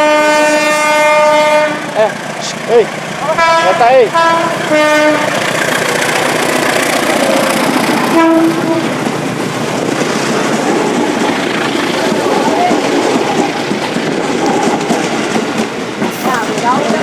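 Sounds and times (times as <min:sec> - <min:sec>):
train horn blasts: 0:00.0 - 0:02.1, 0:03.3 - 0:05.4, 0:08.1 - 0:09.0
train rushing and rail clatter: 0:00.0 - 0:17.0.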